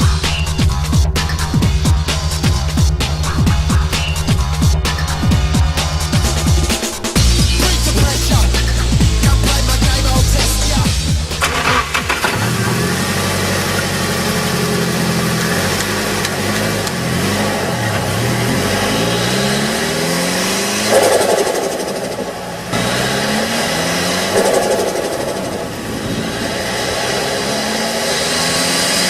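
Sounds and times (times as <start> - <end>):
engine revving: 0.0 - 29.0
turbo fluttering chatter: 20.9 - 27.3.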